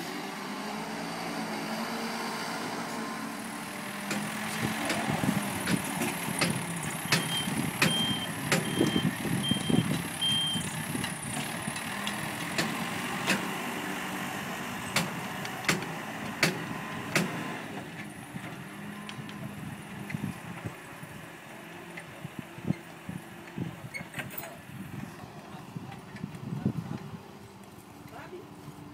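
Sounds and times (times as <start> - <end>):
truck engine running: 0.0 - 23.9
sharp knocks and clanks: 4.0 - 9.0, 15.0 - 17.4
reversing alarm beeping: 7.1 - 10.8.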